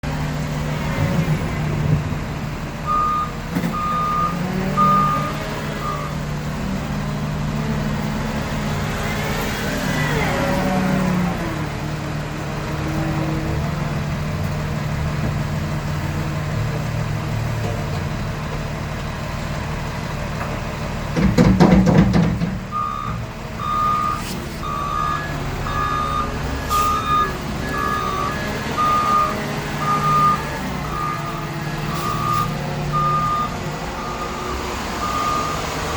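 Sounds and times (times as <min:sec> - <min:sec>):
truck engine running: 0:00.0 - 0:35.9
reversing beeper: 0:02.8 - 0:06.2, 0:22.7 - 0:35.9
loud metal clatter: 0:21.2 - 0:22.7.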